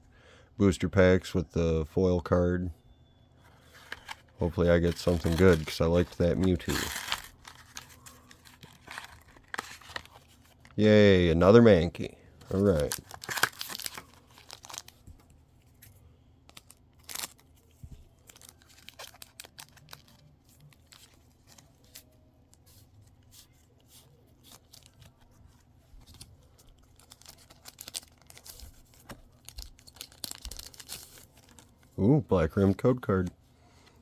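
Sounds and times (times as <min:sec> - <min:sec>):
trading cards sliding and rustling: 0:03.4 - 0:10.6.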